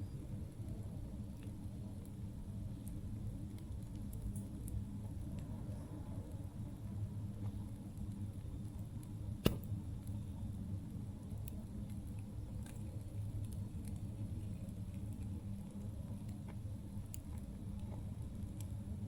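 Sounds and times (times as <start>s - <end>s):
campfire crackling: 0.2s - 19.0s
sharp loud pop: 9.4s - 9.7s.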